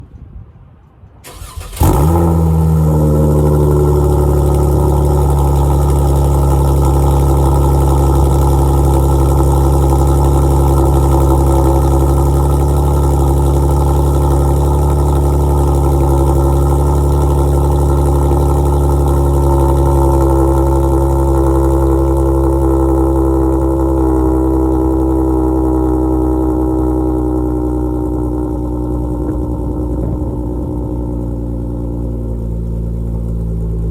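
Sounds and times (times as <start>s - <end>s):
engine cranking: 1.2s - 2.4s
car engine starting and idling: 1.2s - 33.9s.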